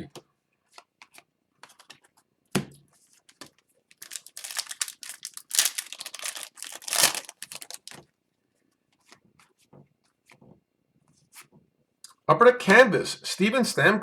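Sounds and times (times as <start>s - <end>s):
foil wrapper crinkling: 4.0s - 8.0s.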